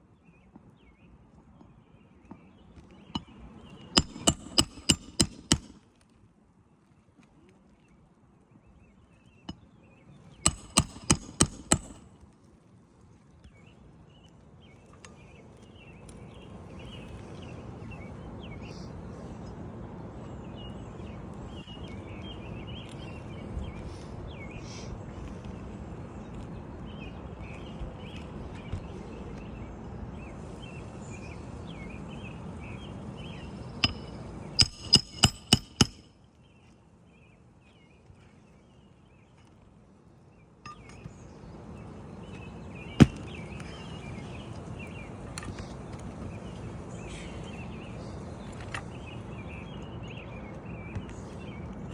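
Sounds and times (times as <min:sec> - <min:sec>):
outdoor background noise: 0:00.0 - 0:51.9
hammer striking nails: 0:04.0 - 0:05.8, 0:10.5 - 0:12.0, 0:33.8 - 0:36.1, 0:43.0 - 0:43.3.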